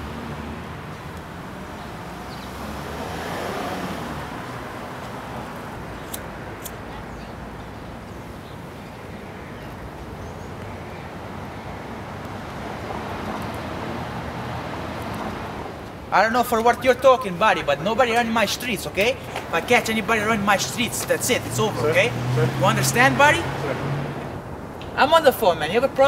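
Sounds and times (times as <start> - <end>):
distant traffic hum: 0.0 - 26.0
sharp clicks: 6.0 - 6.8.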